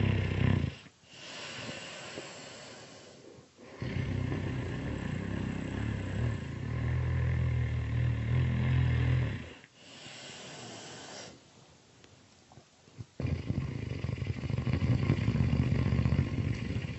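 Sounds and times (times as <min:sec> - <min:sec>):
loud snoring: 0:00.0 - 0:11.4, 0:13.1 - 0:16.9
breathy breath: 0:00.8 - 0:03.8, 0:09.6 - 0:11.4.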